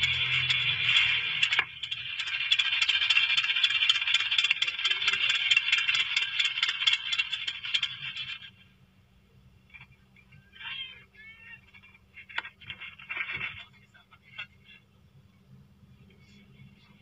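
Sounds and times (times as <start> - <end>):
rapid even rattle of clicks: 0.0 - 8.6.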